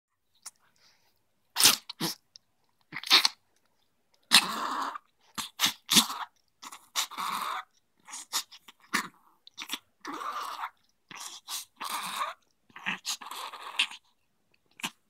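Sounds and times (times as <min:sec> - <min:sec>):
dog sneezing: 0:01.6 - 0:02.2, 0:05.4 - 0:06.1.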